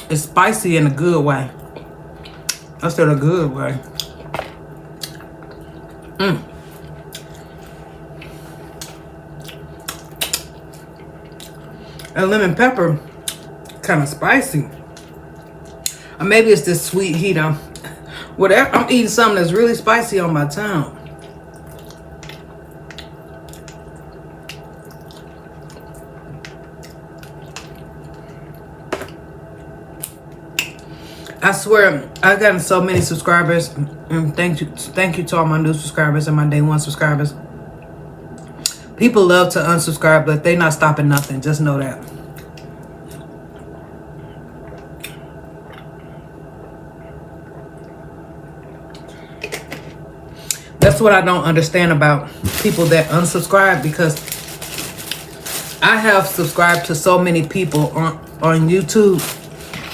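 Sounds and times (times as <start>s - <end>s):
steady low hum: 0.0s - 59.9s
person chewing fried chicken: 3.9s - 12.2s, 21.0s - 28.7s, 42.1s - 48.0s.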